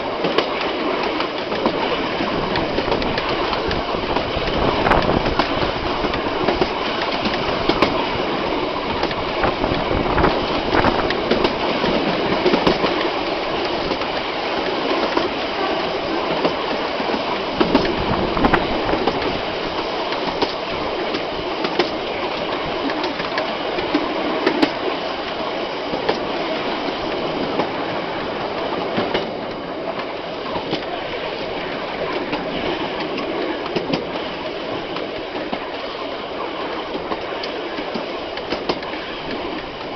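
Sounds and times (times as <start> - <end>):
train wheels rumbling on rails: 0.0 - 39.9
wheels clicking over rail joints: 0.0 - 39.9.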